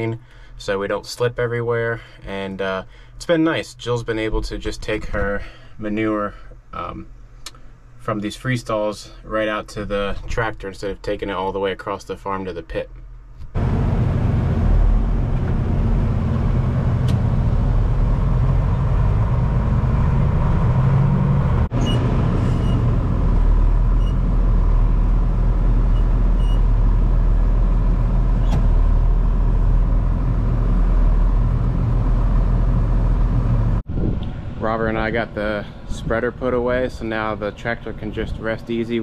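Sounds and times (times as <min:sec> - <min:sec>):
tractor engine droning: 0:13.5 - 0:33.8.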